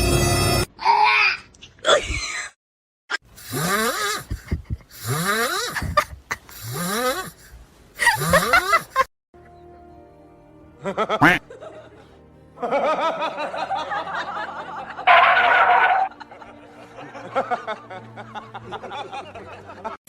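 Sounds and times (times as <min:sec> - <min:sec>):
background music: 0:00.0 - 0:00.7, 0:07.9 - 0:20.0
people laughing: 0:05.8 - 0:06.5, 0:08.0 - 0:09.1, 0:10.8 - 0:20.0.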